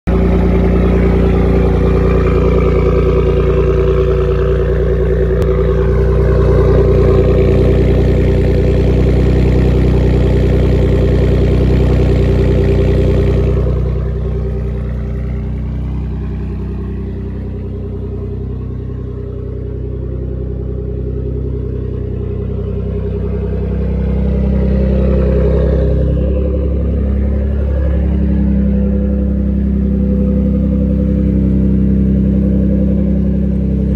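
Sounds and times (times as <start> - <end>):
engine running: 0.0 - 33.9.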